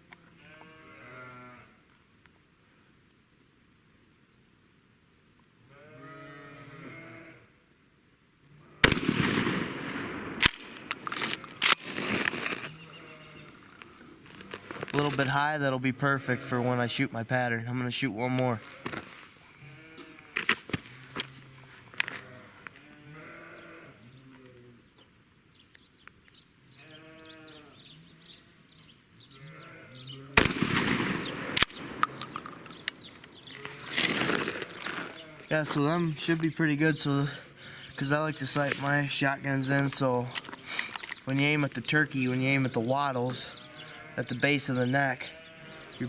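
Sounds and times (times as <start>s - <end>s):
livestock bleating: 0.1s - 1.8s, 5.6s - 7.5s, 8.5s - 8.9s, 11.4s - 15.2s, 16.0s - 17.0s, 18.4s - 24.9s, 26.6s - 30.5s, 32.0s - 41.1s, 42.2s - 46.0s
shotgun blast: 8.8s - 10.9s, 30.4s - 32.2s
small birds chirping: 10.0s - 18.8s, 22.2s - 46.0s
sharp clicks: 10.3s - 12.7s, 30.4s - 35.0s.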